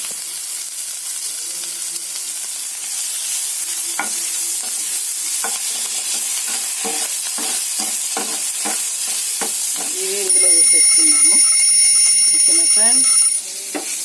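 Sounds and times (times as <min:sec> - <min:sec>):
oil sizzling in a pan: 0:00.0 - 0:14.0
spatula scraping a pan: 0:04.0 - 0:14.0.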